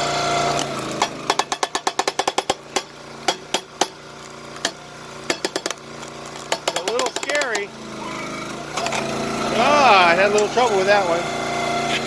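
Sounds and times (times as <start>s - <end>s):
small gas engine running: 0.0s - 12.0s
wood cracking and popping: 1.0s - 7.7s.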